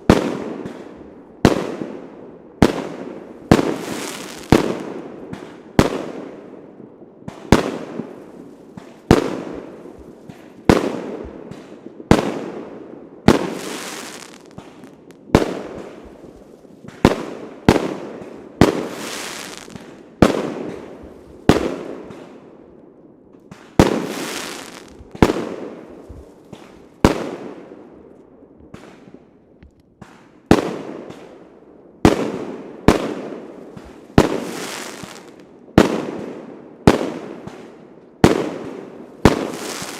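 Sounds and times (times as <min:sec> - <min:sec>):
fireworks banging with echo: 0:13.2 - 0:22.4, 0:23.4 - 0:27.8, 0:36.9 - 0:39.9
firework hissing: 0:24.0 - 0:25.0.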